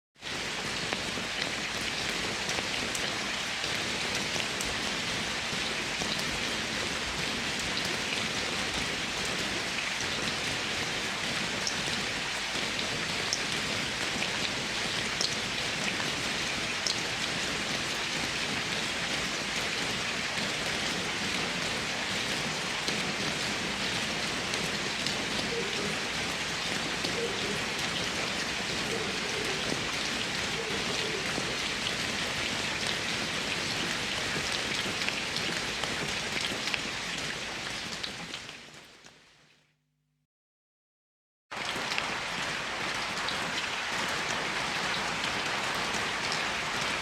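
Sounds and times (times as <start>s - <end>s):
rain hissing: 41.5s - 47.0s.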